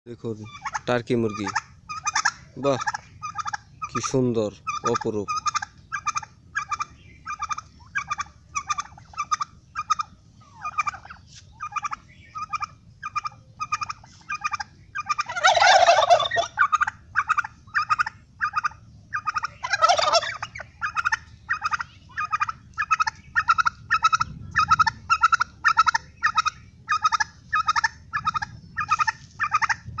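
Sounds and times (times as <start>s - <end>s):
turkey gobbles: 0.2s - 30.0s
turkeys calling: 0.2s - 30.0s.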